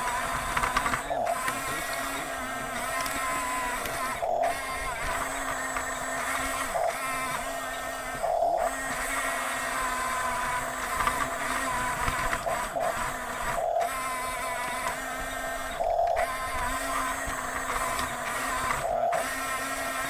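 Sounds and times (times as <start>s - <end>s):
toy electric motors whirring: 0.0s - 20.0s.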